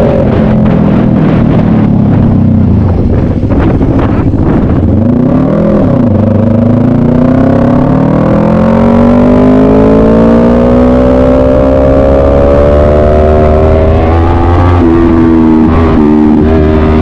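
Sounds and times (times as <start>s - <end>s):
race car engine accelerating: 5.0s - 17.0s.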